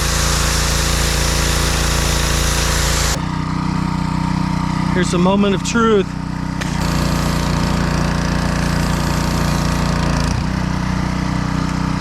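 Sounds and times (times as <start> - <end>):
high-pressure water spray hissing: 0.0 - 3.2, 6.6 - 10.1
pressure washer engine running: 0.0 - 12.0.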